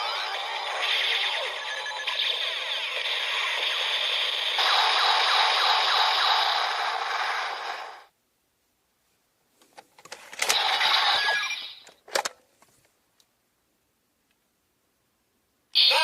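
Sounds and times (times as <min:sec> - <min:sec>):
toy electronic hissing effect: 0:00.0 - 0:07.7.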